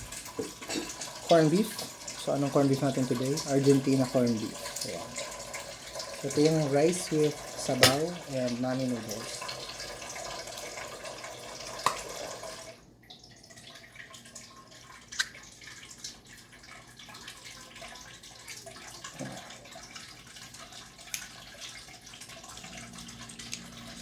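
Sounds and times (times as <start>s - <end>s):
tap water running into pot: 0.0s - 24.0s.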